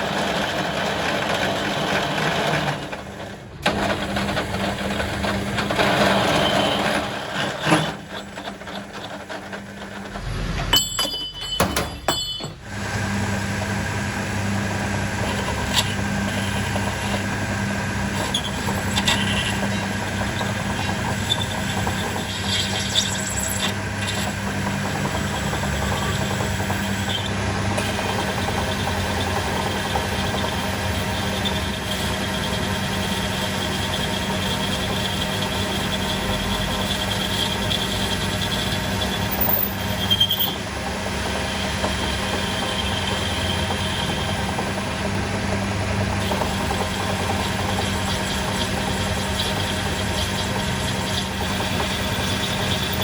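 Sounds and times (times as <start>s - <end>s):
workshop machine humming: 0.0s - 53.0s
high squealing whine: 9.8s - 13.0s, 18.2s - 29.3s, 30.2s - 40.8s, 41.4s - 44.9s, 46.2s - 53.0s
scrape: 10.0s - 10.9s.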